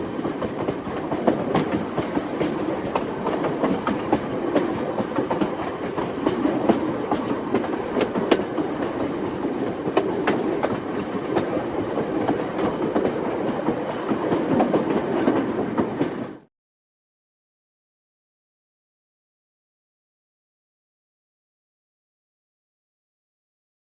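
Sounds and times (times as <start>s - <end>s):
train rumbling on rails: 0.0s - 16.5s
wheels clacking over track: 0.2s - 16.4s.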